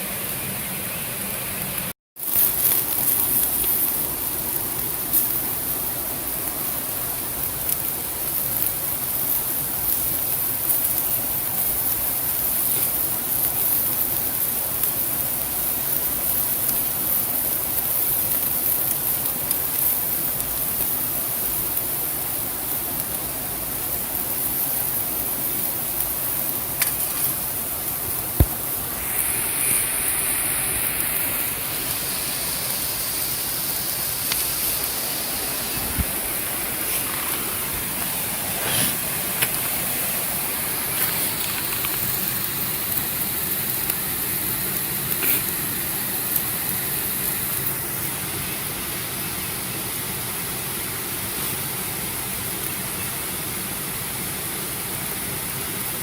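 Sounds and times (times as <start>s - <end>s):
flowing water rushing: 28.4s - 42.0s.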